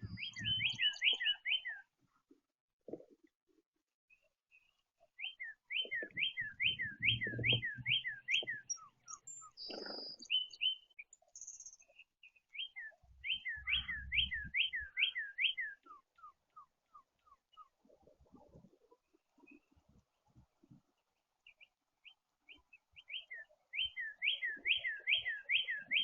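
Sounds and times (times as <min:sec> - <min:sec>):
dull low thumps and rumble: 0:00.0 - 0:00.8, 0:06.8 - 0:08.0
songbird whistling: 0:00.0 - 0:01.8, 0:05.2 - 0:11.8, 0:12.5 - 0:17.0, 0:23.0 - 0:26.0.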